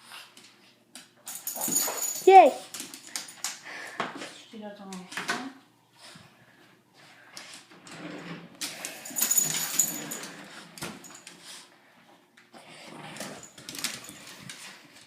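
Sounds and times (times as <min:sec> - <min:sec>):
dogs scuffling: 0:01.3 - 0:03.4, 0:08.8 - 0:11.5, 0:13.1 - 0:15.0.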